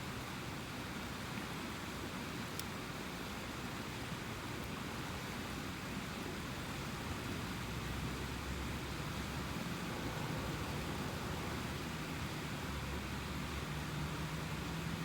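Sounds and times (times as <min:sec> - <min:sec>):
river water rushing: 0:08.0 - 0:15.0.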